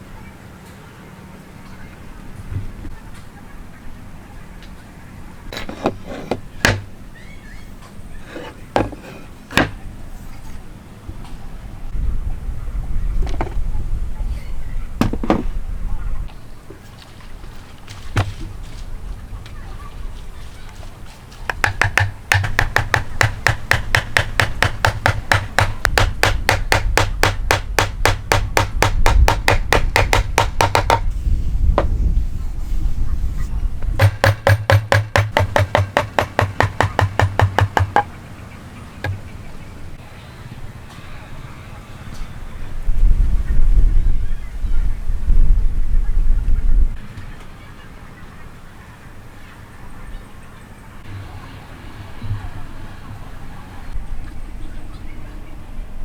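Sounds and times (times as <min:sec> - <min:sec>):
wooden pieces knocking together: 0:05.5 - 0:06.9
rapid hammering on wood: 0:05.6 - 0:06.9, 0:21.5 - 0:31.1, 0:33.8 - 0:38.1, 0:39.0 - 0:39.2.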